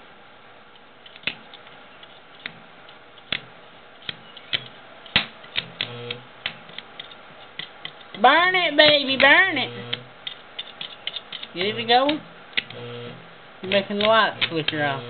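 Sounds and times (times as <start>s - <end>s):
low welding buzz: 0.0s - 7.4s, 8.1s - 15.0s
welding rod striking metal: 3.3s - 6.6s, 8.1s - 15.0s.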